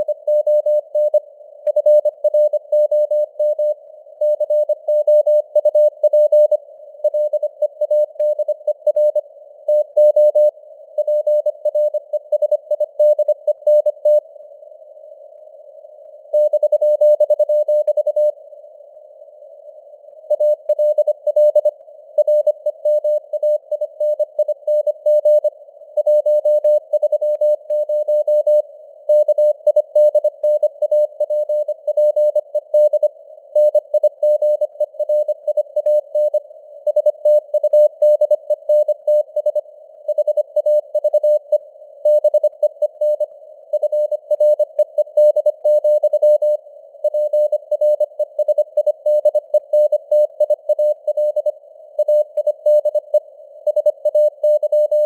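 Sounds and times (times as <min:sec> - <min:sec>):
morse code beeps: 0:20.3 - 0:55.0.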